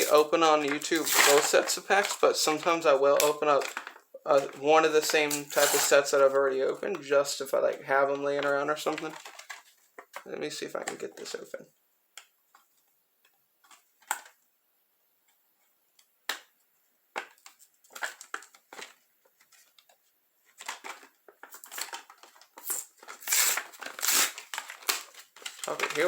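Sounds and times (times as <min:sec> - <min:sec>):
foil wrapper crinkling and tearing: 0:00.0 - 0:06.2, 0:08.8 - 0:10.2, 0:17.2 - 0:19.8, 0:20.5 - 0:26.0.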